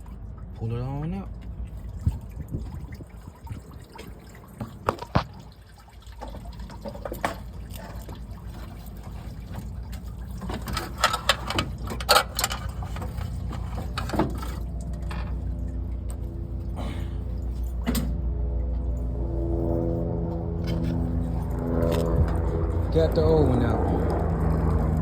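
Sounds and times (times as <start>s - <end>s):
coolant trickling and sloshing: 0.0s - 25.0s
radiator clunks and knocks: 10.3s - 15.5s, 17.6s - 18.3s.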